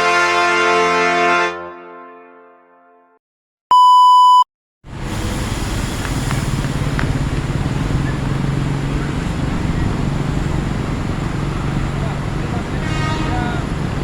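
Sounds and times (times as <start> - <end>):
electronic beep: 3.7 - 4.4
engines and traffic rumble: 4.9 - 14.0.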